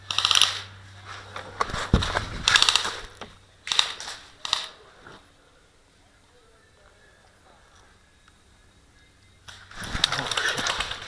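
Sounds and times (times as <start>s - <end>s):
airsoft gun firing bursts: 0.0s - 0.7s, 2.4s - 4.7s.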